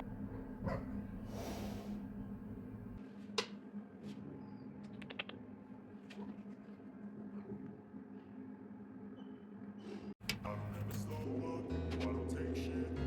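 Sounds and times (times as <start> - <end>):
low hum: 0.0 - 3.0.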